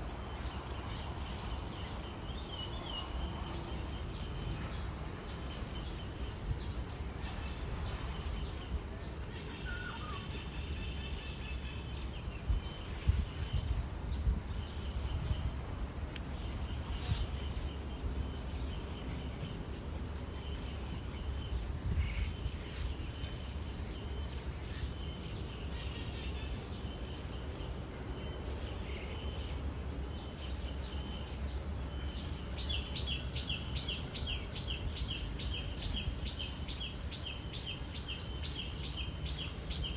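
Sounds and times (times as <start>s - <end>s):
cicadas buzzing: 0.0s - 39.9s
birds chirping: 9.3s - 13.0s.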